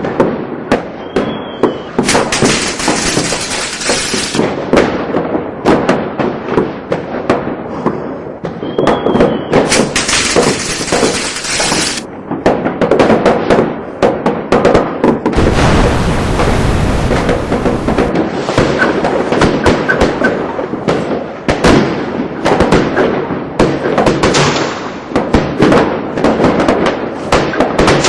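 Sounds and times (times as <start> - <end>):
fireworks bangs and crackles: 0.0 - 28.0
firework whistle: 0.9 - 4.5, 8.5 - 12.0
fireworks hissing: 2.0 - 4.5, 9.6 - 12.1, 15.4 - 18.1
deep rumble: 15.4 - 18.2.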